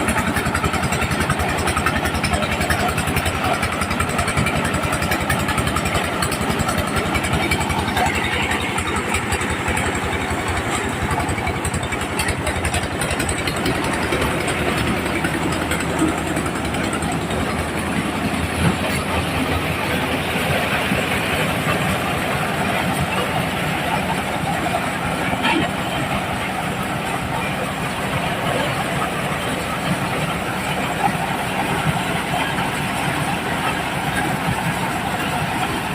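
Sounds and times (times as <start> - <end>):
corn sheller engine running: 0.0 - 35.9.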